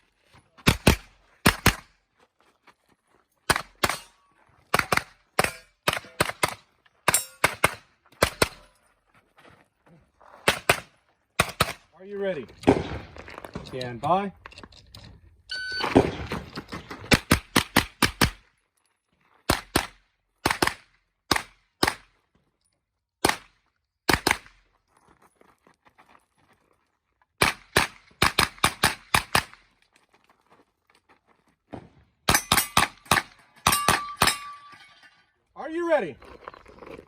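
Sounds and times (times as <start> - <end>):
carbine gunshots: 12.6 - 13.3
shot timer beep: 15.5 - 16.0.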